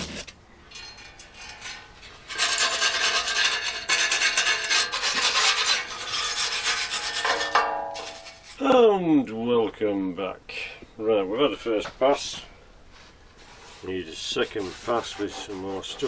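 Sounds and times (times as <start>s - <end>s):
sanding filler on plastic: 13.4s - 16.0s.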